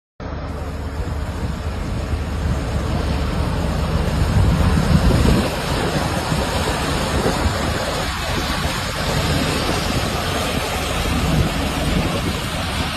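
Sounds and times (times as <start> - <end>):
drilling machine rumbling: 0.2 - 12.9
wind buffeting microphone: 0.3 - 12.9.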